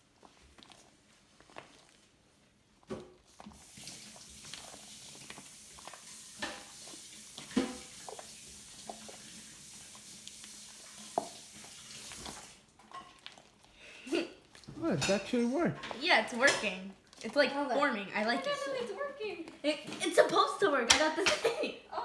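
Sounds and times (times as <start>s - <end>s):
slime being stirred: 0.0s - 19.6s.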